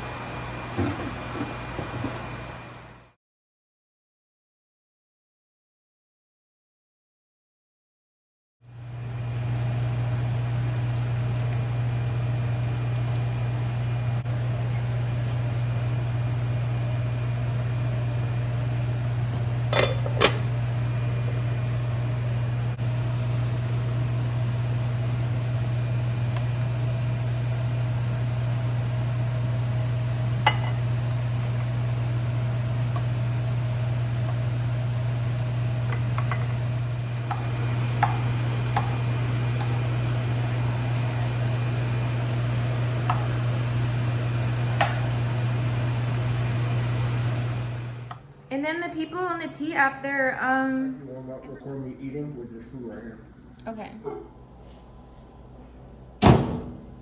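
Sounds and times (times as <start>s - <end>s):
kitchen appliance humming: 0.0s - 3.2s, 8.7s - 49.8s.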